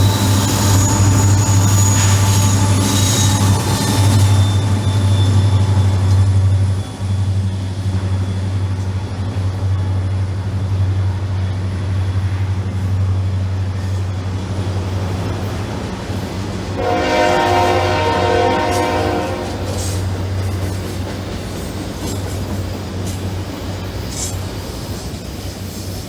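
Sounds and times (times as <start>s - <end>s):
freight train rumble: 0.0s - 26.0s
locomotive horn chord: 16.8s - 20.3s.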